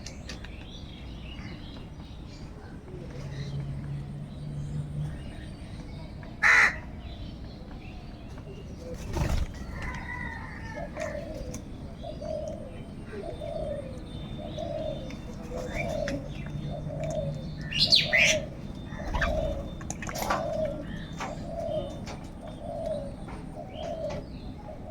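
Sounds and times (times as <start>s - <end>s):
harsh bird calls: 0.0s - 24.9s
bird cooing: 8.8s - 24.9s.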